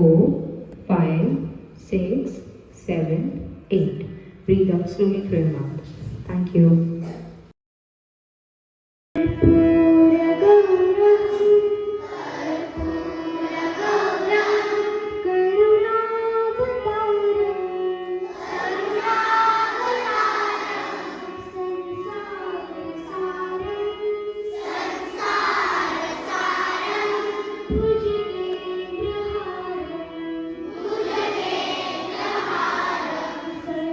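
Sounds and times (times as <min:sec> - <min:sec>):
instrumental accompaniment: 0:09.2 - 0:33.9
voices singing a melody: 0:10.4 - 0:15.2, 0:18.2 - 0:28.0, 0:30.5 - 0:33.9.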